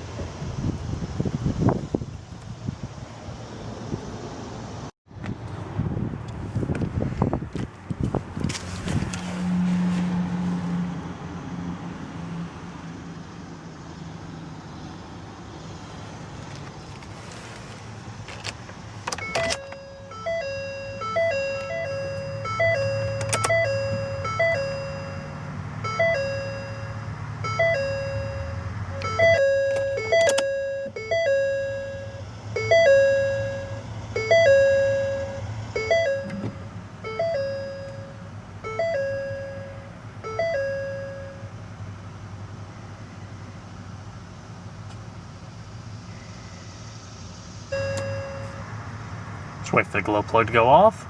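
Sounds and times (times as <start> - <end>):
two-note warning chime: 19.3 - 41.5, 47.8 - 48.6.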